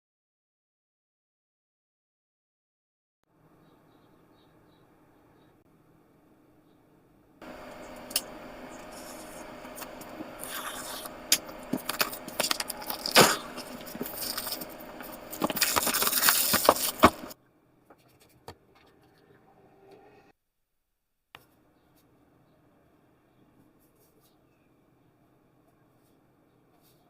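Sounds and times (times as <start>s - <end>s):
steady hum: 4.2s - 17.4s.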